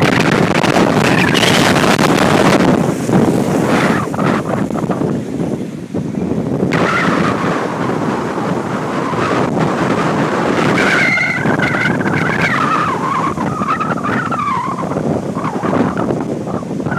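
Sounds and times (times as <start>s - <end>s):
car tyres squealing: 0.0s - 5.0s, 6.7s - 7.9s, 10.4s - 16.9s
steady rushing noise: 0.0s - 16.9s.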